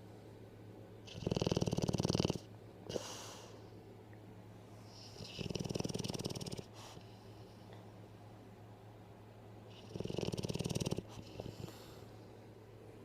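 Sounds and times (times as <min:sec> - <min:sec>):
faint low hum: 0:00.0 - 0:13.0
pet snoring: 0:01.0 - 0:03.4, 0:04.8 - 0:07.2, 0:09.7 - 0:12.0
short breath: 0:02.9 - 0:03.7.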